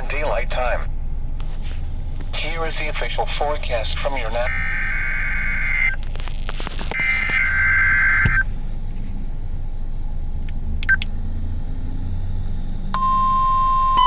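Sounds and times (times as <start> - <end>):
faint radio hiss and hum: 0.0 - 4.5
steady warning alarm tone: 2.4 - 6.0, 7.0 - 8.6, 12.9 - 14.0
two-tone data warble: 6.8 - 8.5.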